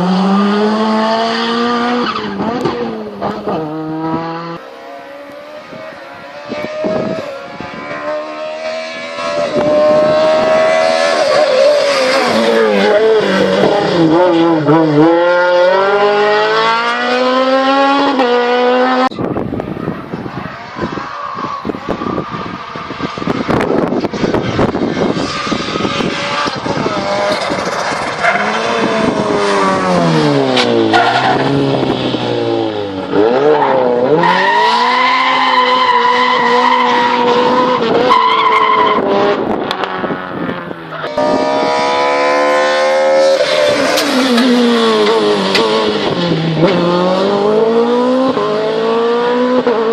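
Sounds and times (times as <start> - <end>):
race car engine revving: 0.0 - 21.0, 21.7 - 49.9.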